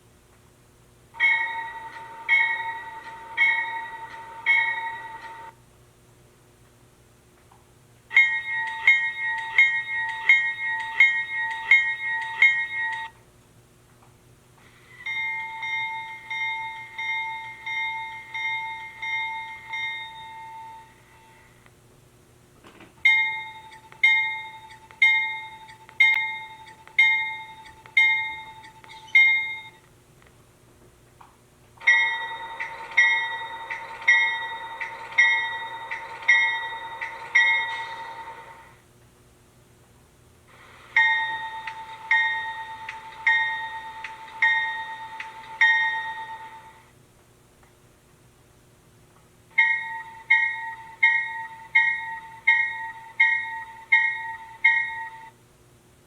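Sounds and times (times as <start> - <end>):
locomotive bell ringing: 1.2 - 5.6, 8.1 - 13.2, 14.9 - 21.6, 23.0 - 29.8, 31.8 - 38.8, 40.9 - 46.8, 49.6 - 55.4.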